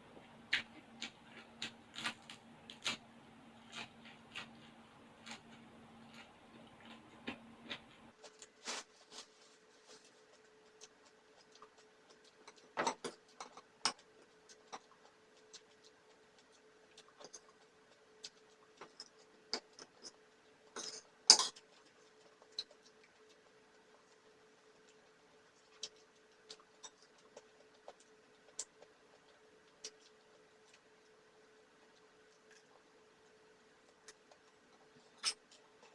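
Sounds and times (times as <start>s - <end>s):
faint steady hum: 0.0s - 35.9s
chewing sounds: 9.9s - 20.8s, 21.5s - 35.9s
cutlery clicking on dishes: 20.8s - 21.6s.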